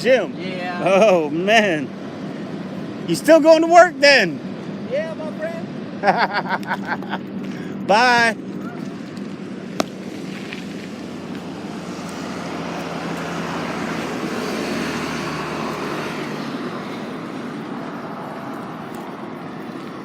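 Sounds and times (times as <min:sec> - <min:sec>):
vehicle passing by: 0:10.0 - 0:20.0.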